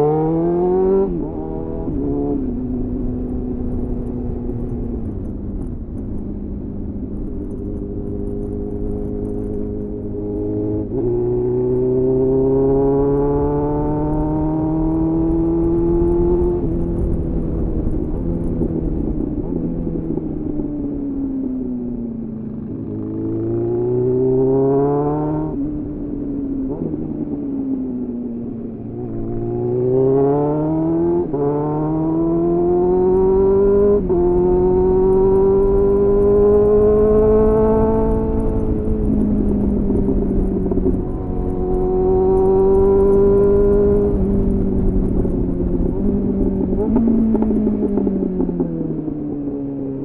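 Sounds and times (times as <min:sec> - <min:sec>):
motorcycle engine revving: 0:00.0 - 0:05.3, 0:07.2 - 0:20.5, 0:22.5 - 0:27.4, 0:28.5 - 0:50.0.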